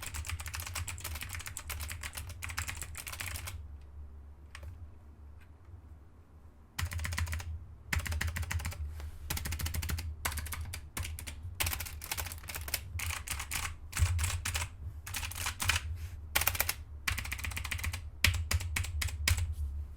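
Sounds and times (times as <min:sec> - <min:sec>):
clicky keyboard typing: 0:00.0 - 0:03.6, 0:06.8 - 0:19.5.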